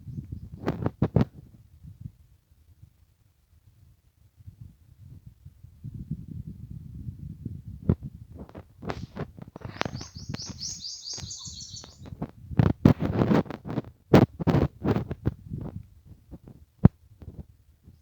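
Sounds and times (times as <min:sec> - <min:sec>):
rustling: 0:08.5 - 0:12.3
bird chirping: 0:09.6 - 0:12.1.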